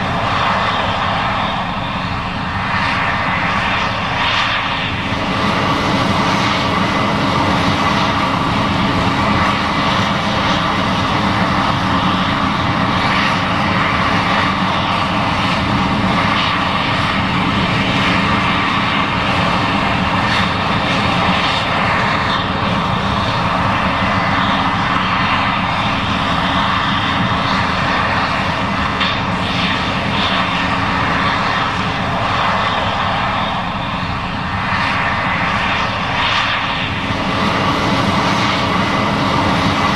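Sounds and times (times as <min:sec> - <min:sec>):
combine engine drone: 0:00.0 - 0:39.9.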